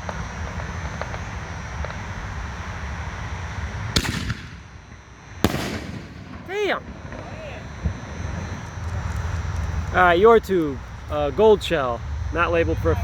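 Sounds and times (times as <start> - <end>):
firework shell bursting crack: 3.9 - 4.7, 5.4 - 7.2.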